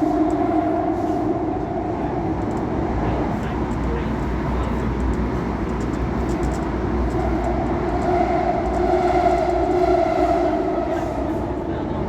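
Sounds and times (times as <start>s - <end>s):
train running rumble and rail noise: 0.0s - 12.0s.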